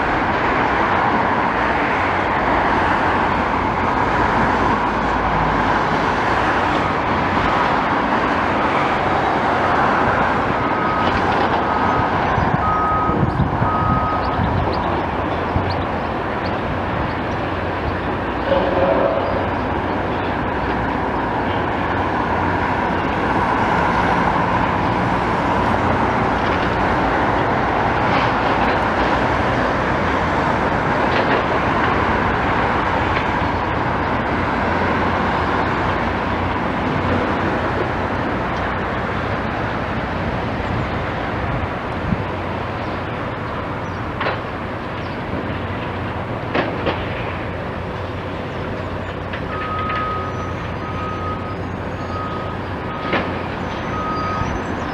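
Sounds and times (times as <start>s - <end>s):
reversing alarm beeping: 10.7s - 14.5s, 49.5s - 54.9s.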